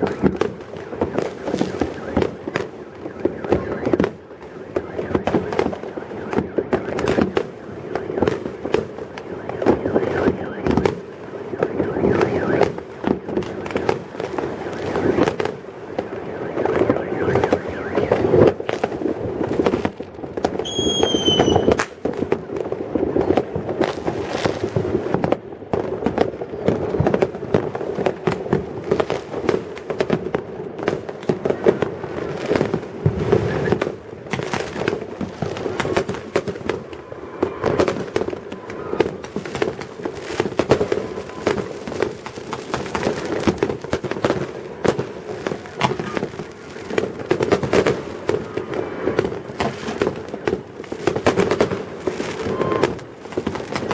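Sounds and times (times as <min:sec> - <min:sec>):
falling firework whistle: 0:00.0 - 0:18.6, 0:20.6 - 0:22.0, 0:33.0 - 0:34.9, 0:35.6 - 0:43.5, 0:45.5 - 0:46.3, 0:52.2 - 0:53.1
fireworks bangs and crackles: 0:00.0 - 0:53.9.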